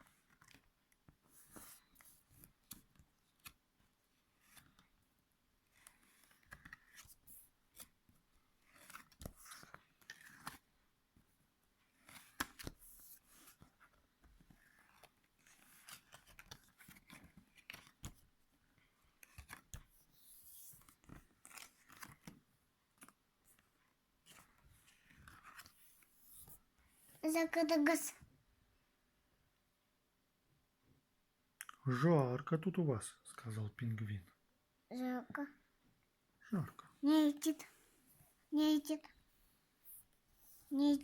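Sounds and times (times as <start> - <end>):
rustling of book pages: 0.0 - 28.2.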